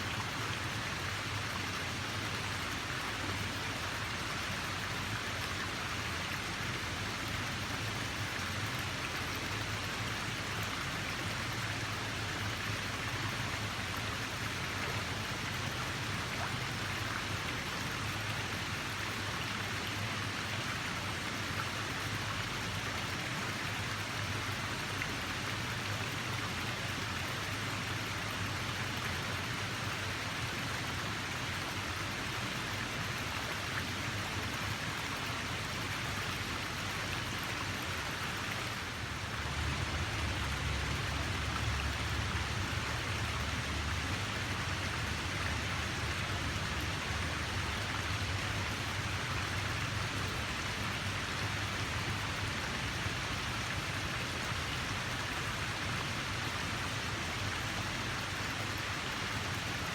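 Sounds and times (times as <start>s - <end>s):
water rushing: 31.2s - 59.8s.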